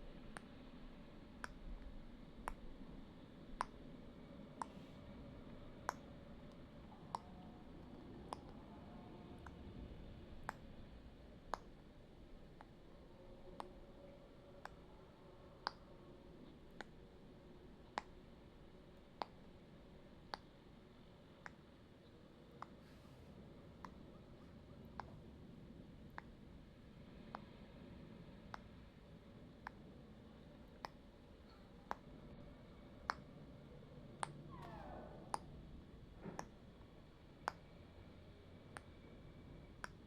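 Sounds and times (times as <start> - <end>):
low steady hum: 0.0 - 40.0
faint sharp clicks: 0.2 - 8.8, 11.5 - 11.9, 15.6 - 17.1, 20.2 - 20.6, 21.3 - 21.7, 22.4 - 23.2, 27.2 - 27.6, 28.5 - 35.6, 36.2 - 40.0.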